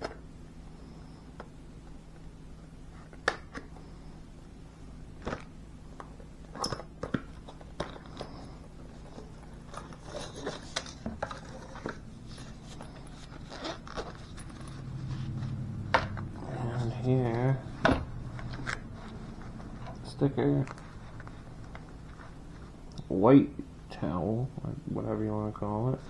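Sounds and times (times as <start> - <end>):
packaging clicks and rustles: 5.1 - 15.0.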